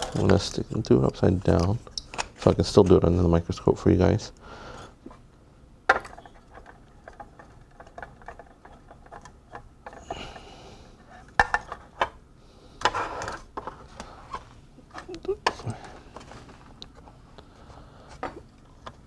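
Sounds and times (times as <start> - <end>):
clicks and clatter of parts handled: 0.0 - 3.0, 5.9 - 10.1.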